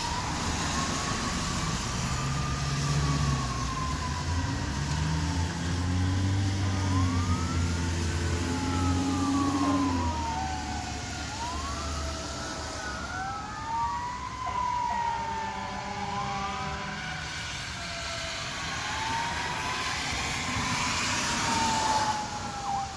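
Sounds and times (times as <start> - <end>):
truck engine low rumble: 0.0 - 17.1
fire engine sirens wailing: 0.0 - 22.9.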